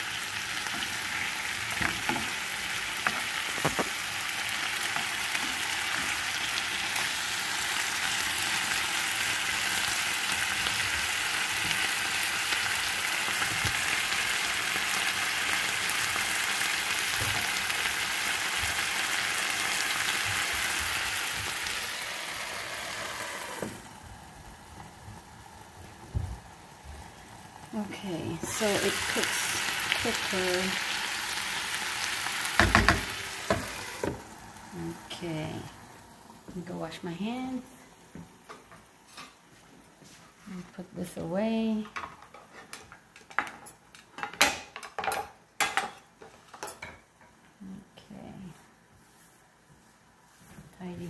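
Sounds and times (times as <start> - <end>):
chicken sizzling in a frying pan: 0.0 - 37.2.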